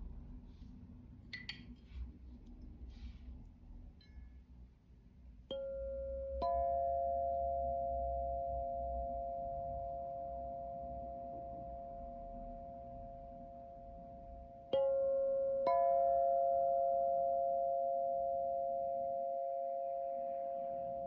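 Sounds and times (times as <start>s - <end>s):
struck bell-like tones ringing: 5.5s - 21.0s.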